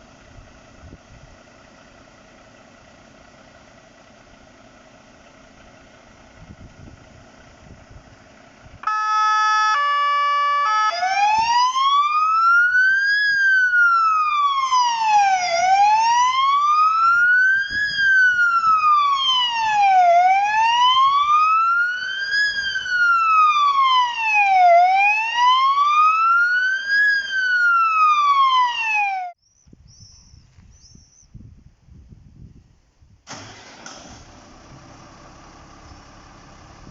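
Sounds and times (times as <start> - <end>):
electronic siren wailing: 8.8 - 29.4.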